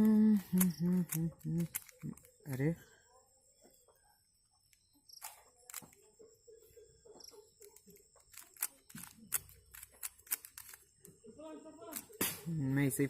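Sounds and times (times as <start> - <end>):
puzzle cube plastic clicks: 0.0 - 2.8, 7.6 - 11.1.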